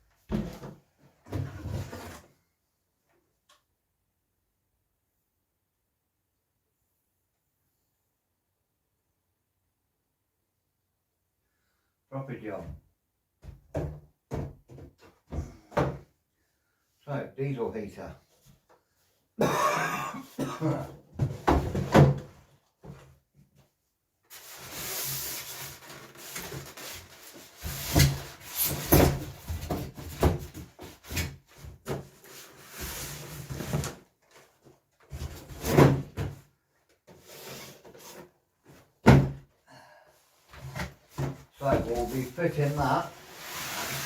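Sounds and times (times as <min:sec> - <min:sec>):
packaging rustling and scraping: 0:24.3 - 0:29.4, 0:41.8 - 0:44.0.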